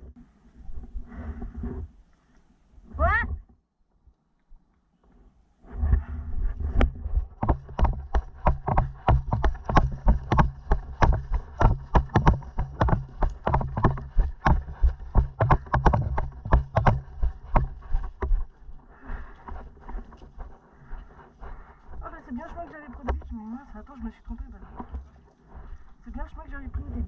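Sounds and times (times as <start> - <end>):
quick footsteps on a path: 6.4 - 26.2.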